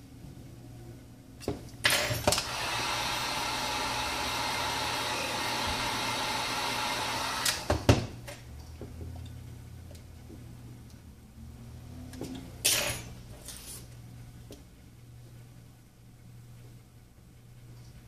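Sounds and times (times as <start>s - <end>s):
heat gun blowing: 2.3s - 7.8s.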